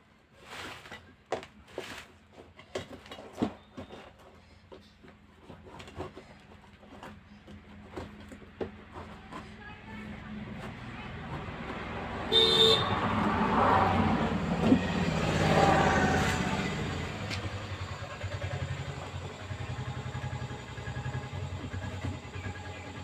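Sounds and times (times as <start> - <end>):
passing vehicle engine: 10.0 - 23.0
vehicle horn toot: 12.3 - 13.2.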